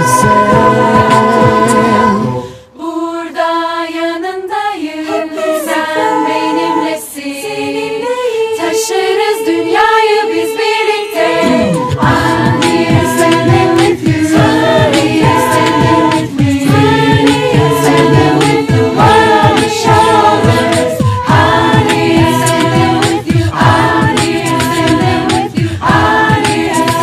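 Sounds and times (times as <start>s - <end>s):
choir singing in harmony: 0.0s - 27.0s
low accompaniment: 10.3s - 27.0s.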